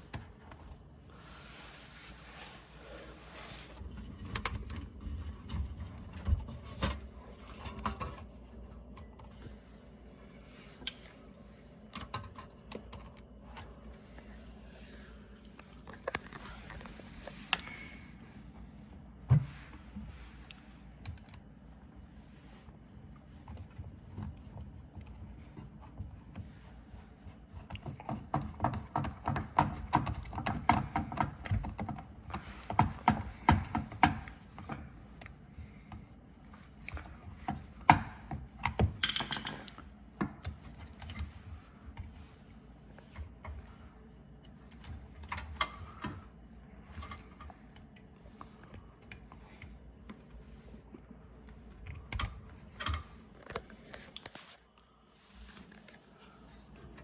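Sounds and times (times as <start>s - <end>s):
tools and parts clicking: 38.7s - 39.8s.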